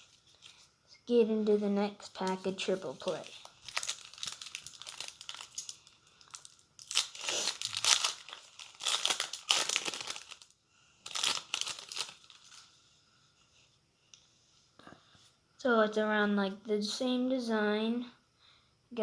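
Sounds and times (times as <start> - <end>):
card pack wrapper tearing and crinkling: 2.2 - 12.6.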